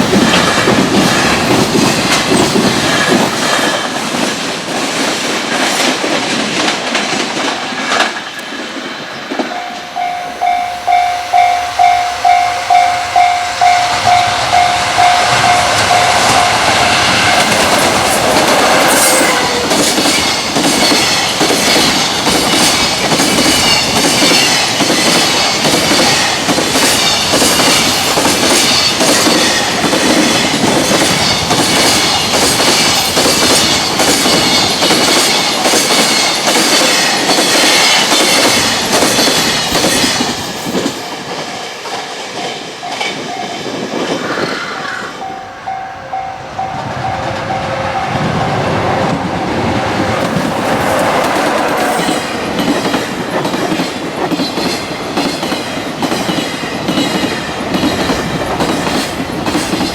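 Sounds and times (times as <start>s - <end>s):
train wheels clattering on rails: 0.0s - 59.9s
level crossing bell clanging: 9.3s - 17.6s, 45.2s - 48.4s.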